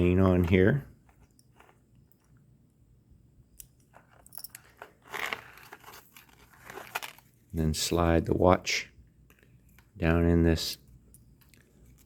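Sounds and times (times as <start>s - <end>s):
hands rustling chain and leather: 0.3s - 2.4s, 3.6s - 8.1s.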